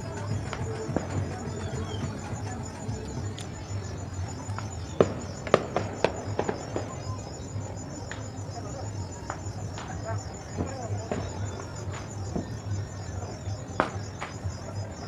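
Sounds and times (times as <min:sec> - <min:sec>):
fireworks popping and cracking: 0:00.0 - 0:08.3.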